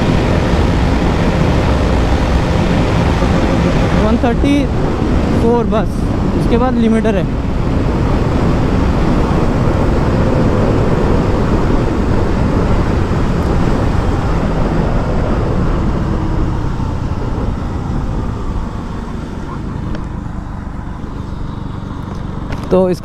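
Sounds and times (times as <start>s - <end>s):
wind rush on microphone: 0.0s - 22.8s
motorcycle engine at high revs: 0.0s - 22.9s.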